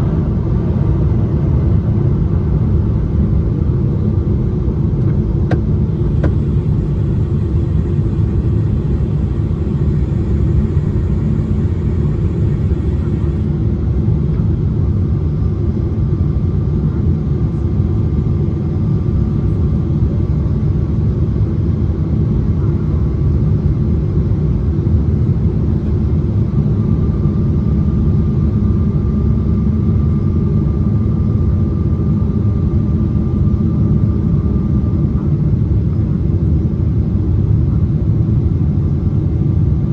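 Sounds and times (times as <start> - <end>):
airplane cabin rumble: 5.0 - 13.6
faint whine: 5.8 - 13.6.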